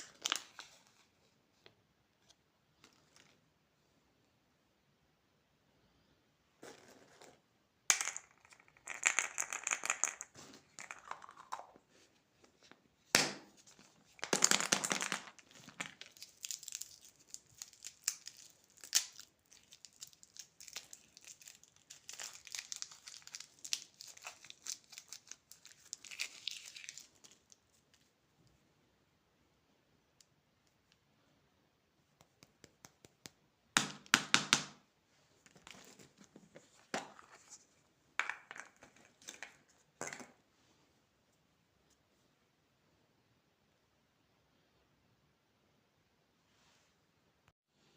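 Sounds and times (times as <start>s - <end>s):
plastic wrappers crinkling and tearing: 15.9s - 27.6s.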